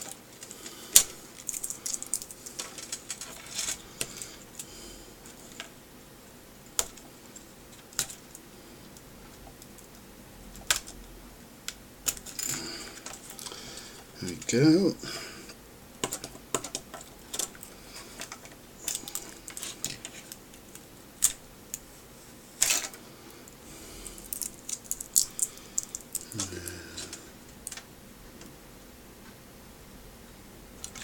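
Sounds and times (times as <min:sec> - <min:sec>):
small plastic parts clicking: 0:16.0 - 0:21.8, 0:24.1 - 0:27.8.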